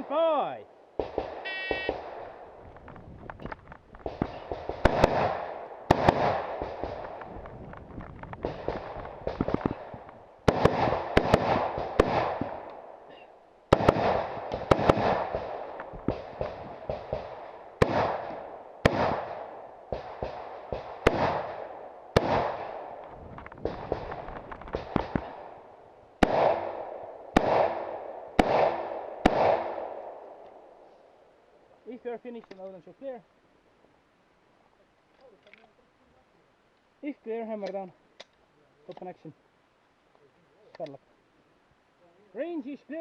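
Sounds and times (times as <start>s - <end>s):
rifle shots with echo: 1.0s - 2.5s, 4.0s - 7.3s, 8.4s - 13.0s, 13.7s - 23.0s, 23.6s - 30.7s.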